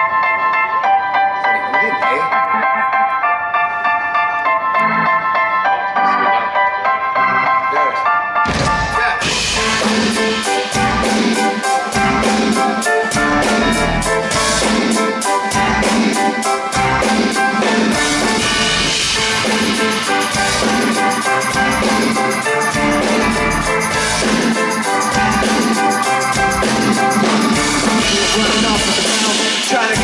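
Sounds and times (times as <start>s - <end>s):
live rock band music: 0.0s - 30.0s
drum kit steady beat: 8.5s - 30.0s.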